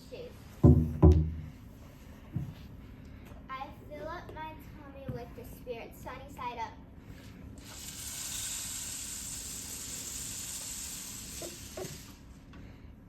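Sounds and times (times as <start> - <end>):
egg sizzling in a pan: 7.6 - 12.2.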